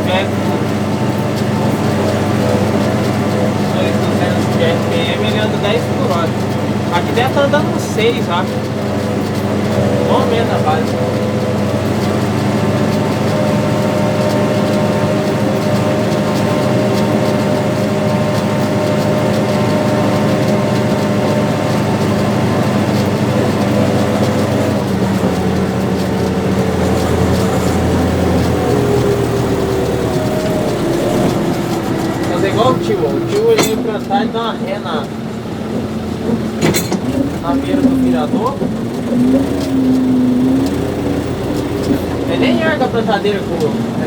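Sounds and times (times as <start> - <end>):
tractor diesel engine running: 0.0 - 44.0.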